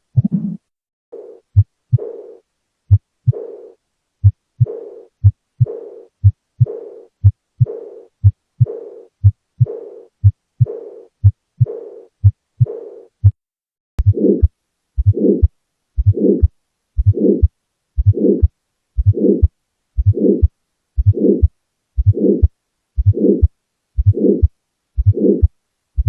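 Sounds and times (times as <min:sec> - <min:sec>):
heartbeat lub-dub: 0:00.0 - 0:02.2, 0:04.2 - 0:13.4, 0:14.0 - 0:26.0
heart murmur hiss: 0:14.0 - 0:26.0.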